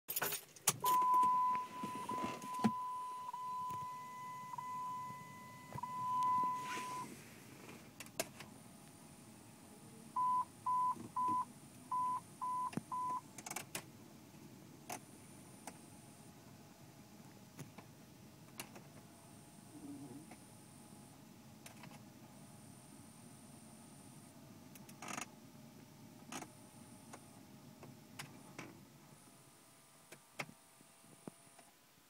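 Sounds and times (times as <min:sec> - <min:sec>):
short beeps: 0:00.8 - 0:07.1, 0:10.2 - 0:13.2
steady high beep: 0:00.8 - 0:07.1, 0:10.2 - 0:13.2.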